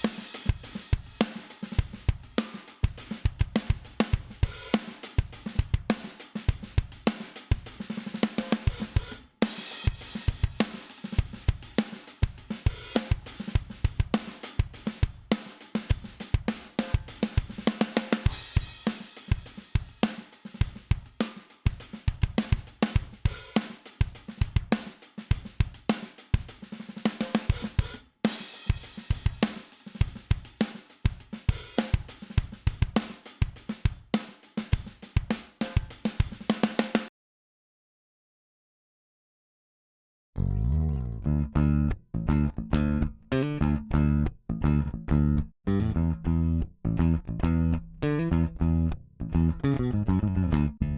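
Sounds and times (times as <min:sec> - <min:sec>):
drum kit playing a groove: 0:00.0 - 0:37.1.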